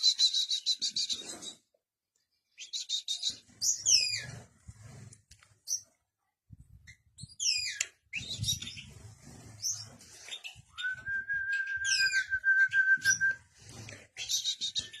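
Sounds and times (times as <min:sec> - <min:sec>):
pet bird chirping and whistling: 0:02.6 - 0:04.3, 0:07.2 - 0:08.9, 0:10.8 - 0:13.4, 0:14.2 - 0:15.0.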